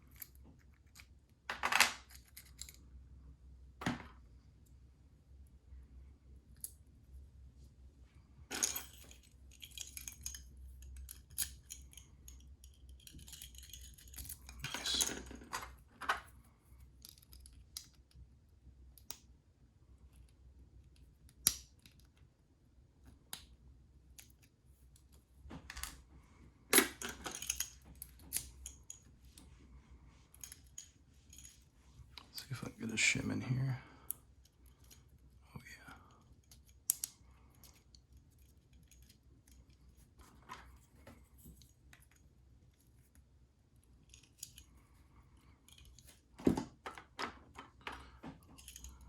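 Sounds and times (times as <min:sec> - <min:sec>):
low steady hum: 0:00.0 - 0:49.0
lockpicking tools clicking and scraping: 0:08.6 - 0:16.3, 0:26.7 - 0:29.1, 0:30.3 - 0:31.6, 0:44.0 - 0:46.2, 0:46.9 - 0:49.0.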